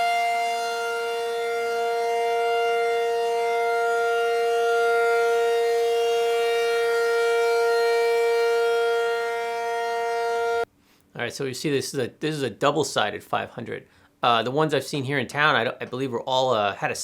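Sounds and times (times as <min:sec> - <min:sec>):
warning siren steady tone: 0:00.0 - 0:10.7.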